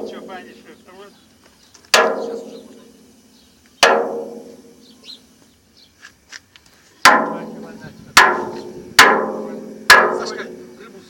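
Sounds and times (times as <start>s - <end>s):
barrel knock ringing: 1.9s - 2.6s, 3.8s - 4.5s, 7.1s - 10.4s
faint bird chirps: 4.8s - 6.0s.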